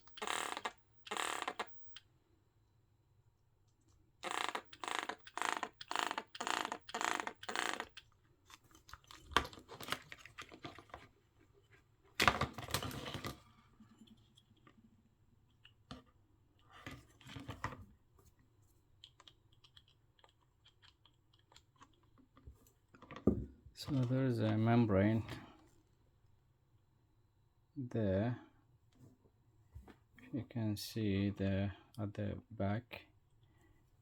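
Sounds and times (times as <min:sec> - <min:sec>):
plastic parts clicking: 0:00.0 - 0:02.0, 0:04.2 - 0:11.0.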